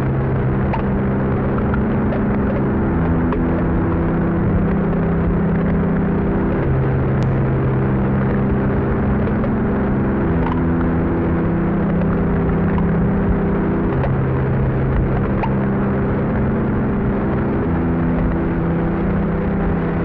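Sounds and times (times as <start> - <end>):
low sustained drone chords: 7.2 - 12.4.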